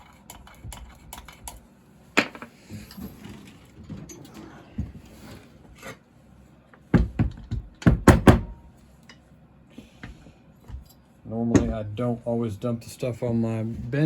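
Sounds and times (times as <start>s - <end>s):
metal parts knocking on workbench: 2.2s - 2.5s.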